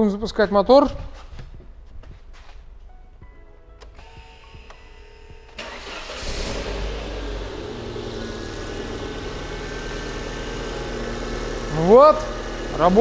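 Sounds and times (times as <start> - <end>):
car engine starting and idling: 3.8 - 13.0.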